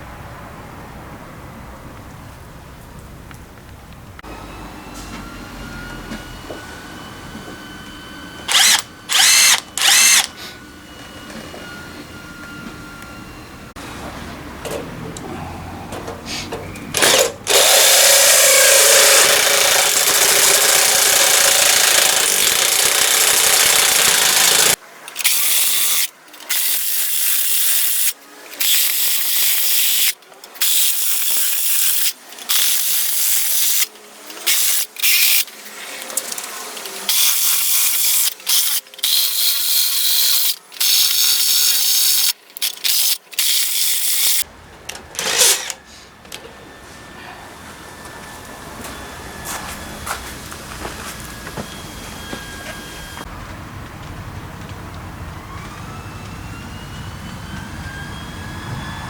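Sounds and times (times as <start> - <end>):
power tool working on metal: 4.3 - 11.8, 16.9 - 44.5, 45.2 - 45.9.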